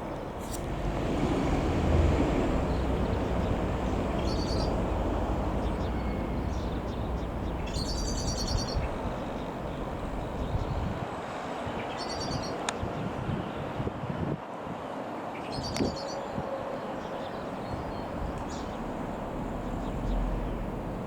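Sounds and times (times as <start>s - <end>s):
bird chirping: 0.0s - 11.0s, 17.0s - 21.0s
jet engines rumbling: 0.0s - 11.0s, 16.6s - 21.0s.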